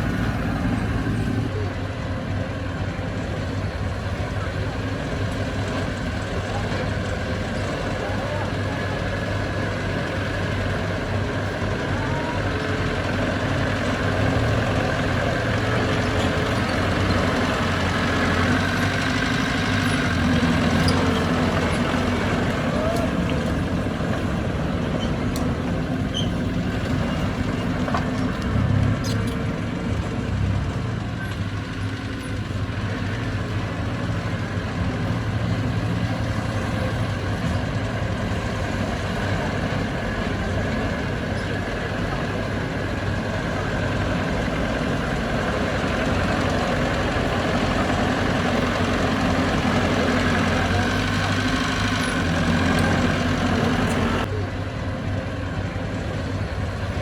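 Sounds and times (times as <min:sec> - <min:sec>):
diesel machinery engine drone: 0:00.0 - 0:57.0.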